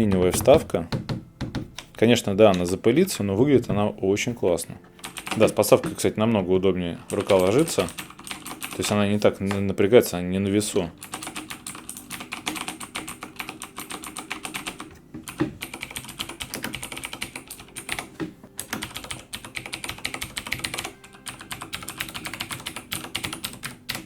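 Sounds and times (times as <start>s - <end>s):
fast typing on mechanical keyboard: 5.0s - 6.0s, 7.1s - 9.6s, 11.0s - 24.0s.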